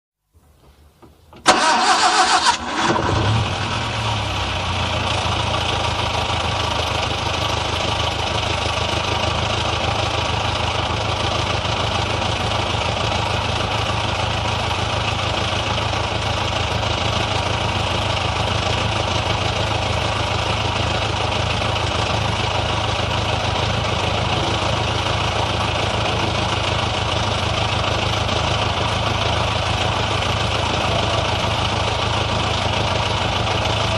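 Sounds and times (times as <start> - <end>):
car engine idling: 1.0 - 33.9
car starter cranking: 1.3 - 3.7.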